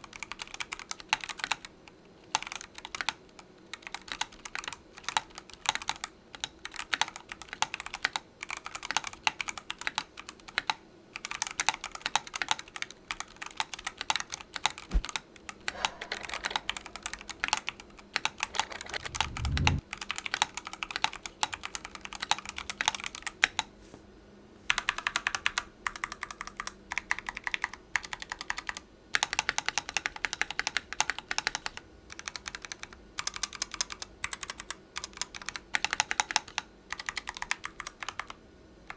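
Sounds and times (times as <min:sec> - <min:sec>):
mechanical keyboard typing: 0:00.0 - 0:23.7, 0:24.7 - 0:38.9
low thump: 0:14.9 - 0:15.1.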